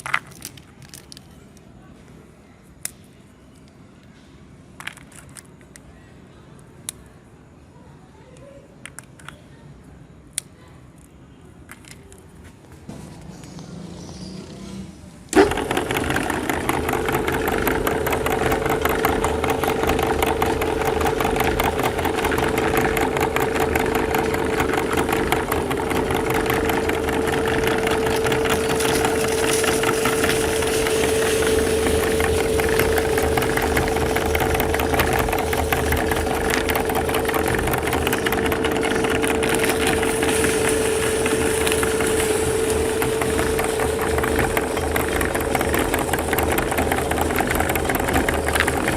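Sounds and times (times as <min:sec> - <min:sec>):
grinding biscuits: 0:15.4 - 0:48.9
meat grinder motor humming: 0:15.4 - 0:48.9.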